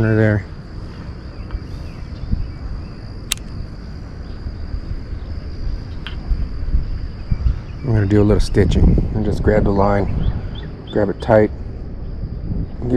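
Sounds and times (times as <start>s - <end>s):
insects buzzing: 0.0s - 12.9s
low rumble: 0.0s - 12.9s
sharp click: 3.3s - 3.6s.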